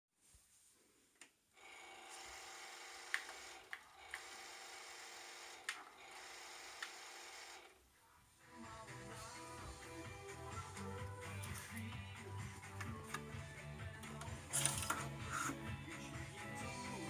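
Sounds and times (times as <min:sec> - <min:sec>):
music on radio station: 0:08.4 - 0:17.0.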